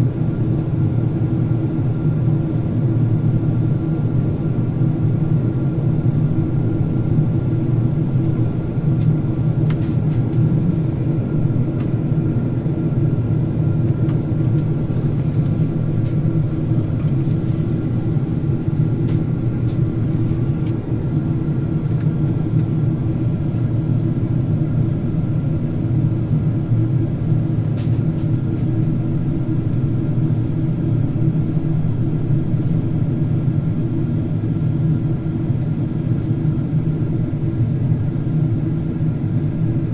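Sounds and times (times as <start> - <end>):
aircraft cabin engine drone: 0.0 - 39.9.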